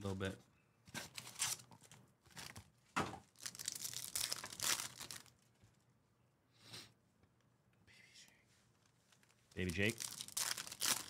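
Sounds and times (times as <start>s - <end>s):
foil wrappers crinkling and tearing: 3.3s - 5.5s, 9.2s - 11.0s.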